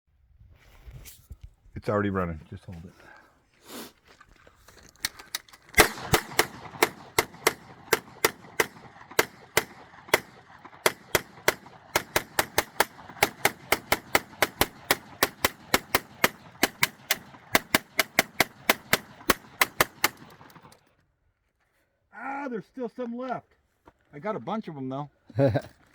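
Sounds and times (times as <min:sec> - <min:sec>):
gatling gun firing single shots: 0:05.7 - 0:20.9.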